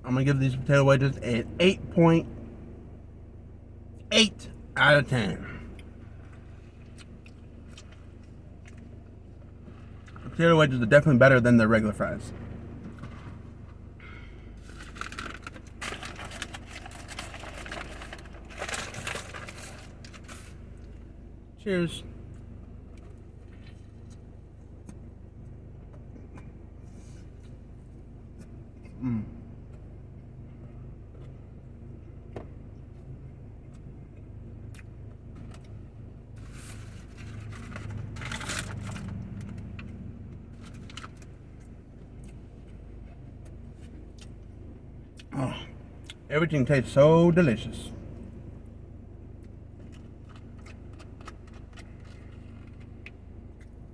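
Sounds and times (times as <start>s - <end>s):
steady low hum: 0.0s - 53.9s
chewing with mouth clicks: 5.7s - 10.2s, 33.6s - 35.8s, 49.3s - 53.9s
chewing crispy food: 5.7s - 10.4s, 14.6s - 21.0s, 22.2s - 25.6s, 33.0s - 46.3s, 49.3s - 53.9s
food wrapper rustling: 14.6s - 20.5s.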